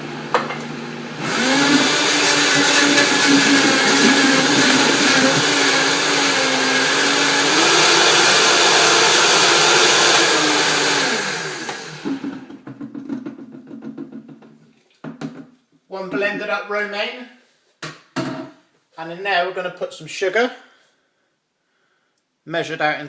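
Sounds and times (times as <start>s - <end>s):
blender motor running: 0.0s - 12.5s.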